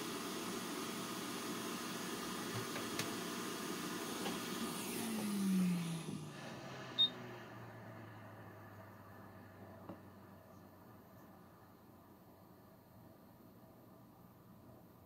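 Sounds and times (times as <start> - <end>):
hot air blower hissing: 0.0 - 9.9
fan winding down: 0.0 - 10.5.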